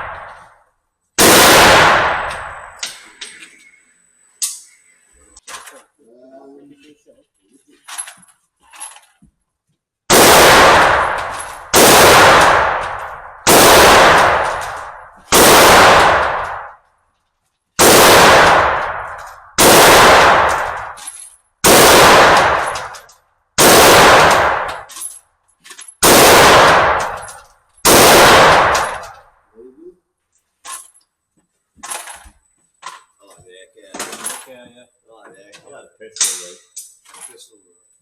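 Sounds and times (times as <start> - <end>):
handgun shots: 10.1 - 16.8, 21.7 - 23.0.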